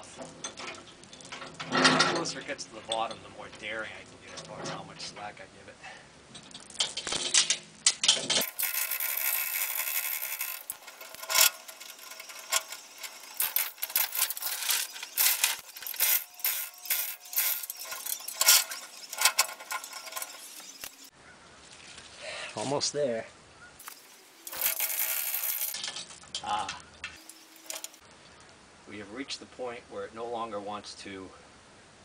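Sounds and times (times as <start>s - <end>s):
hoist chain rattling: 6.4s - 21.1s, 23.8s - 28.0s.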